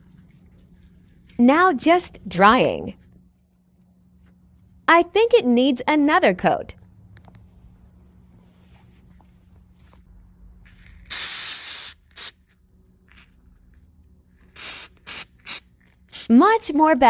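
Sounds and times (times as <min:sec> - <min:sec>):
spray paint can hissing: 0:10.6 - 0:12.4, 0:14.5 - 0:16.7.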